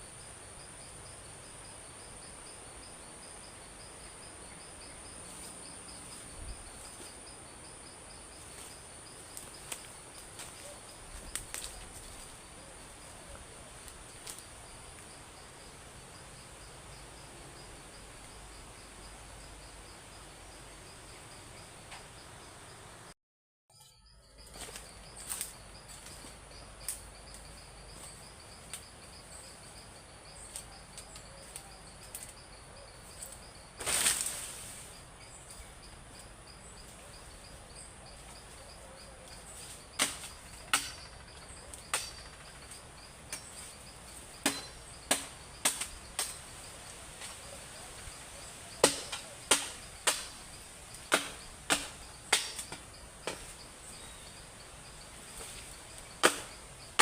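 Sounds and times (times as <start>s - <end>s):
insects chirping: 0.0s - 23.1s, 23.7s - 57.0s
sharp knocks or chops: 40.0s - 41.1s, 44.4s - 46.4s, 48.8s - 50.3s, 51.1s - 53.5s, 56.2s - 56.5s.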